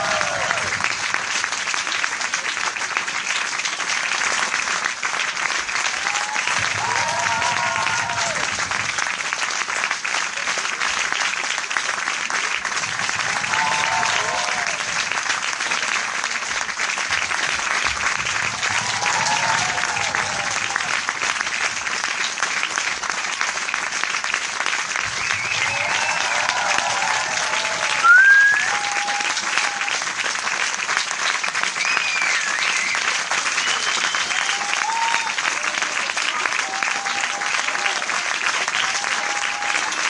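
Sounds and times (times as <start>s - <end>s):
pitched cheer call: 0.0s - 0.8s, 6.0s - 8.4s, 13.3s - 15.0s, 18.6s - 21.0s, 25.2s - 30.0s, 31.8s - 38.1s, 38.7s - 40.0s
audience applauding: 0.0s - 40.0s.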